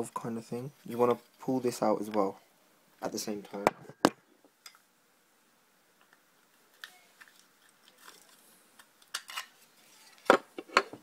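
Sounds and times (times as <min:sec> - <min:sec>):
plastic parts clicking and crunching: 0:06.7 - 0:11.0.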